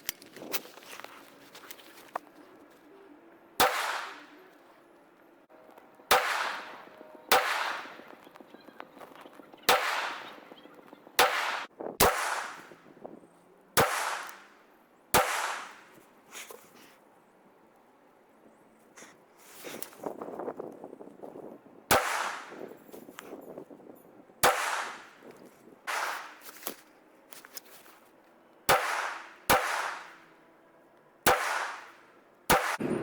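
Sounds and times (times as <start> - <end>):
rifle shots with echo: 3.6 - 4.4, 6.1 - 8.4, 9.6 - 10.6, 11.2 - 12.8, 13.8 - 14.5, 15.2 - 15.9, 21.9 - 22.6, 24.4 - 25.2, 25.9 - 26.4, 28.7 - 30.2, 31.3 - 33.0.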